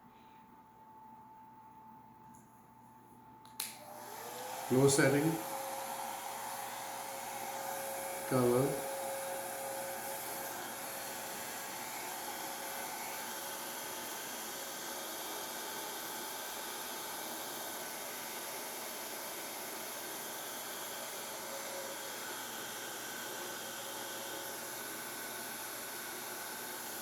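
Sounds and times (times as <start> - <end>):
hair dryer running: 3.5 - 27.0.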